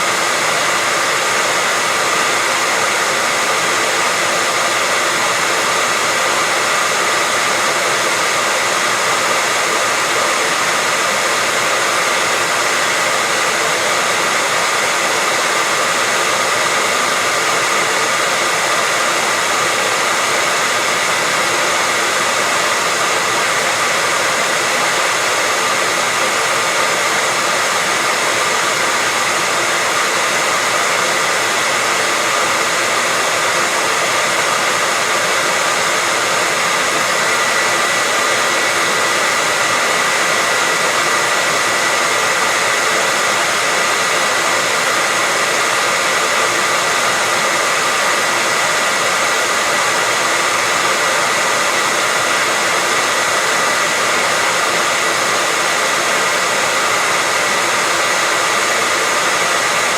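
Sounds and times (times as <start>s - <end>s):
hair dryer blowing: 0.0s - 59.9s.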